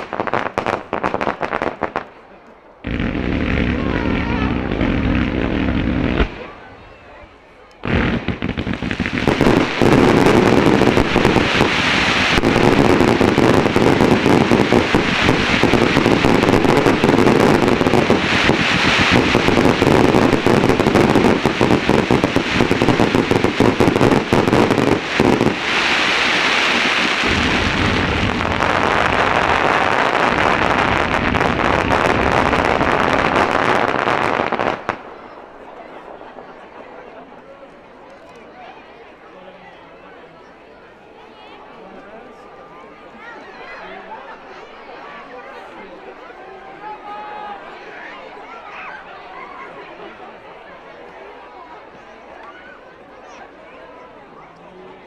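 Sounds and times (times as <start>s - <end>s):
fireworks bursting and crackling: 0.0s - 38.5s.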